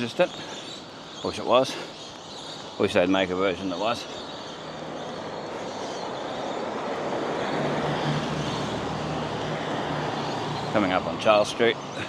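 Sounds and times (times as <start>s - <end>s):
engine hum: 3.9s - 12.0s.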